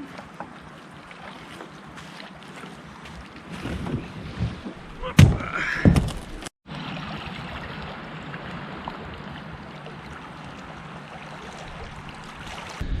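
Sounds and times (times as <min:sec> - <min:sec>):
loud hollow thumps: 0:03.8 - 0:06.5
hiss of wind and water: 0:06.7 - 0:13.0.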